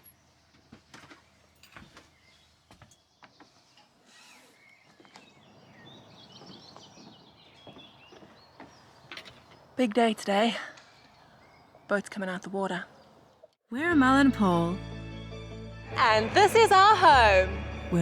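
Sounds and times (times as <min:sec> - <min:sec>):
birds chirping: 0:00.0 - 0:13.6.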